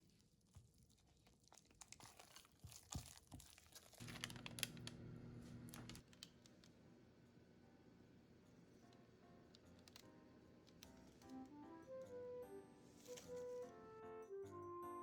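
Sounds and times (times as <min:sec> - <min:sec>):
crinkling handling noises: 0:00.0 - 0:06.8, 0:12.8 - 0:13.8.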